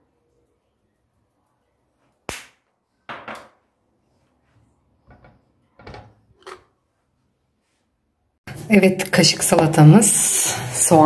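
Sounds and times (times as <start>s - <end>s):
kitchenware knocking: 3.1s - 3.6s.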